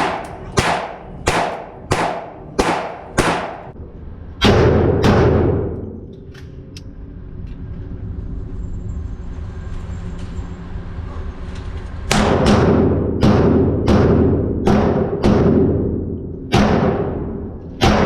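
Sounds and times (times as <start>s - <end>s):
pistol shots: 0.0s - 3.8s
steady low hum: 0.0s - 18.0s.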